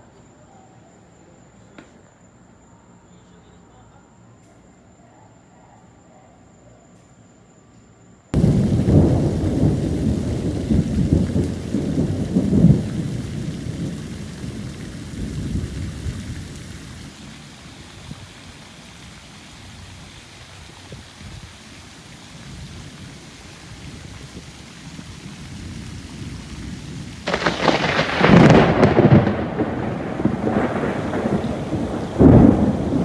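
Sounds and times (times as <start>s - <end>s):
rain hiss: 8.4s - 33.0s
thunder rumbling: 8.4s - 33.0s.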